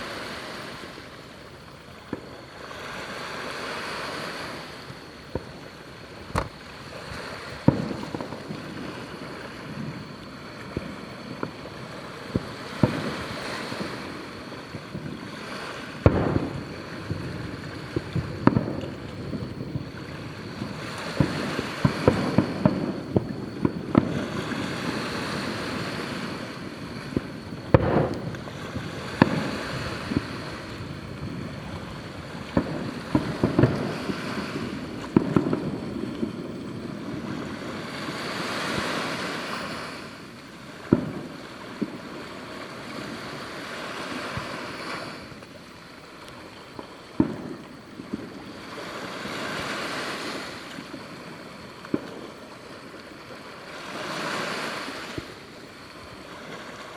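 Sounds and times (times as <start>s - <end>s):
fireworks bangs: 0.0s - 45.6s, 46.7s - 53.2s, 54.0s - 56.9s
continuous rushing noise: 0.0s - 48.5s.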